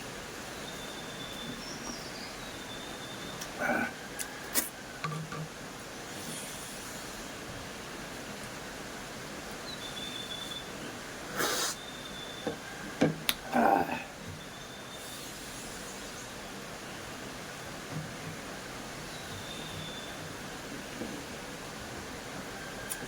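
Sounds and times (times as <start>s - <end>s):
steady background hiss: 0.0s - 23.0s.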